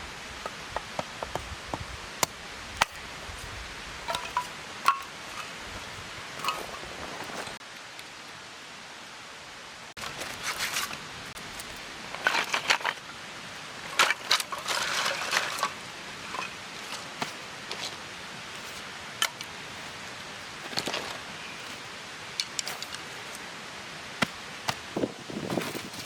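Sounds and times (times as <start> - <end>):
steady hiss: 0.0 - 26.0
handling clicks and clinks: 4.1 - 5.6, 6.4 - 7.5, 18.6 - 23.4.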